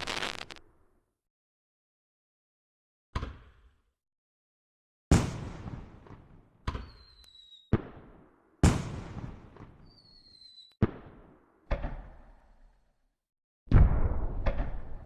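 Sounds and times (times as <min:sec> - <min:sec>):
firework bangs: 0:00.0 - 0:00.6.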